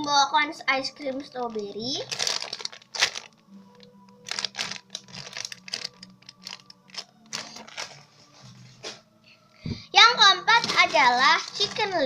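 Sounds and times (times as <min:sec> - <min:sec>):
foam toy squeezed clicks and rustles: 0:04.2 - 0:07.9.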